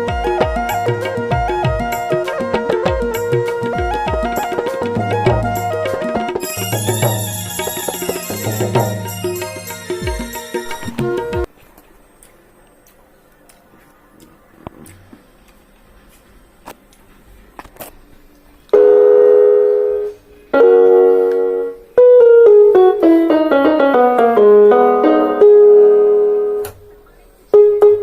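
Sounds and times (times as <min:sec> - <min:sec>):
electronic keyboard piano chords: 0:00.0 - 0:11.5, 0:18.8 - 0:28.0.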